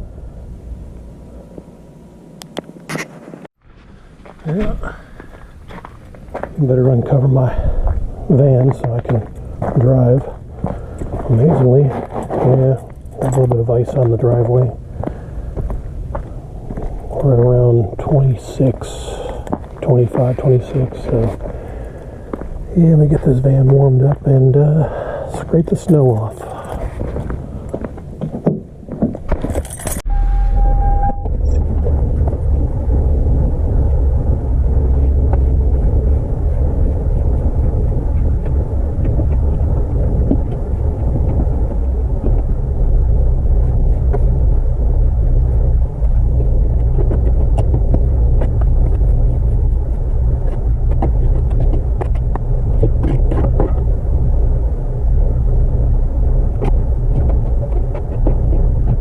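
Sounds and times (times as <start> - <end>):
keys jangling: 29.5 - 30.0.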